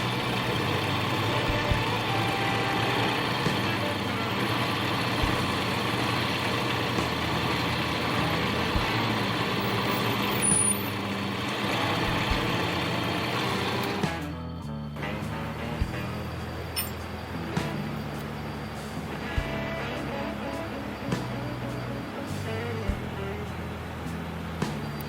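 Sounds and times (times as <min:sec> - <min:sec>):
lathe motor running: 0:00.0 - 0:14.0.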